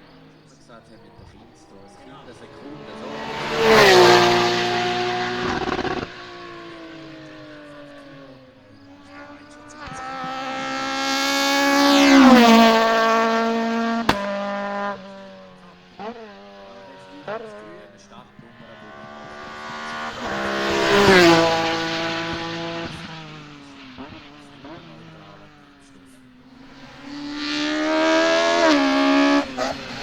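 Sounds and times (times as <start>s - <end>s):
race cars passing at high revs: 0.0s - 30.0s
sharp engine crack: 0.0s - 30.0s.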